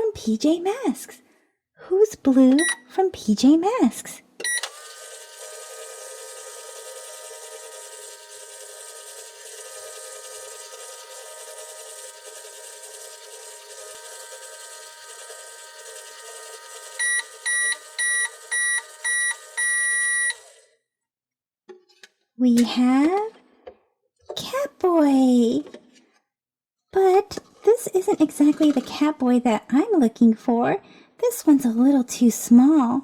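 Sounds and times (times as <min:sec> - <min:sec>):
toy microwave electronic hum: 0:04.4 - 0:20.7.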